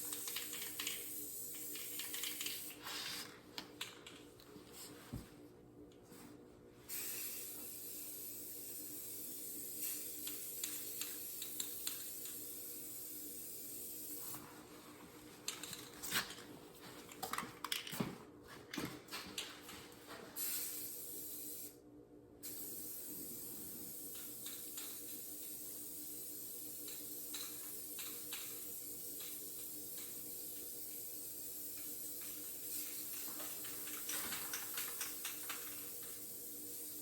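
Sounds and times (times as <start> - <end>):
spray paint hissing: 0.0 - 2.8, 6.9 - 14.4, 20.4 - 21.8, 22.4 - 37.0.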